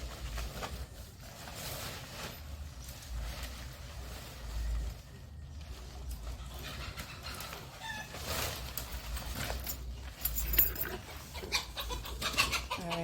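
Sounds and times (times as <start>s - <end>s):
chickens clucking: 10.9s - 13.0s.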